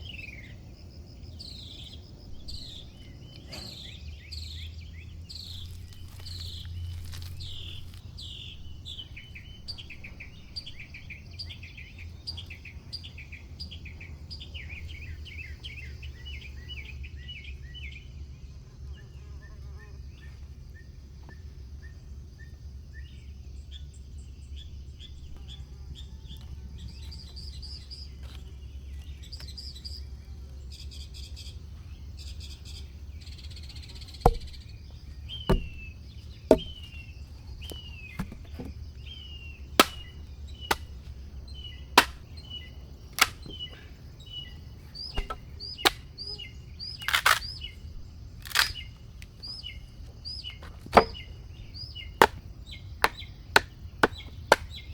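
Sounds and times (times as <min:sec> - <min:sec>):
birds chirping: 0:00.0 - 0:18.0, 0:23.7 - 0:54.9
wood being chopped: 0:05.4 - 0:10.9, 0:34.0 - 0:43.8, 0:45.1 - 0:46.2, 0:47.0 - 0:48.9, 0:50.4 - 0:54.9.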